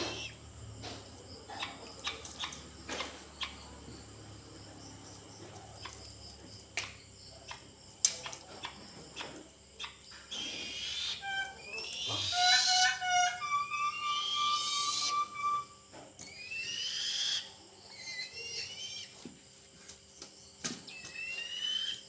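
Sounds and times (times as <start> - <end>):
eagle chick high calls: 0.0 - 0.4, 9.8 - 19.2.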